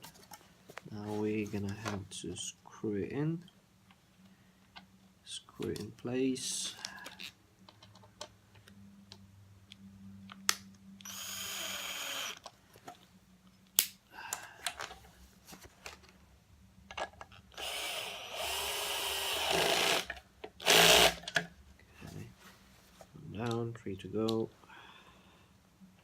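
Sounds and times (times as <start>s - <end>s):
power screwdriver whirring: 11.0s - 12.4s, 17.5s - 21.3s.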